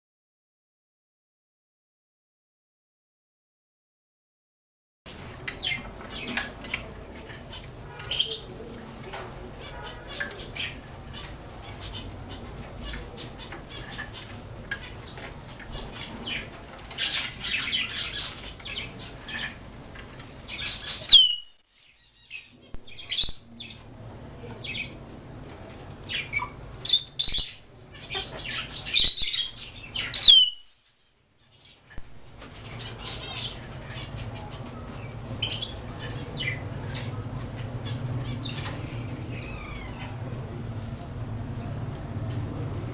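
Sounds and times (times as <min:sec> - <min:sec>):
parrots squawking: 0:09.6 - 0:19.6, 0:20.5 - 0:21.4, 0:26.1 - 0:30.6, 0:32.6 - 0:40.2.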